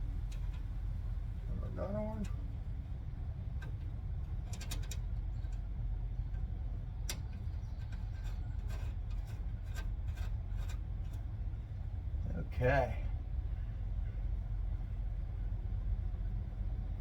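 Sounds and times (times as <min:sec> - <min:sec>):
steady low rumble: 0:00.0 - 0:17.0.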